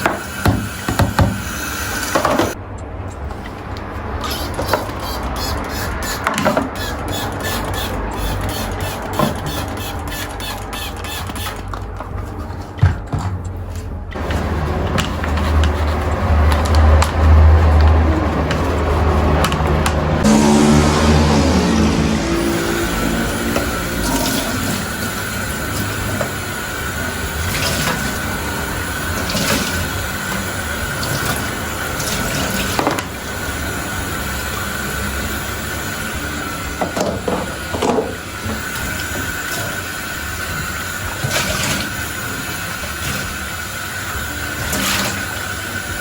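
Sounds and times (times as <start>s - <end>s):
water running: 14.2s - 46.0s.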